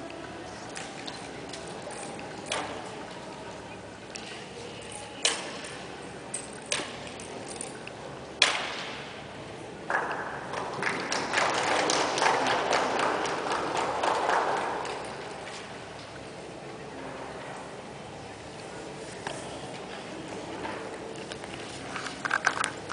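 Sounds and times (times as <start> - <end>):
applause: 10.6 - 15.1.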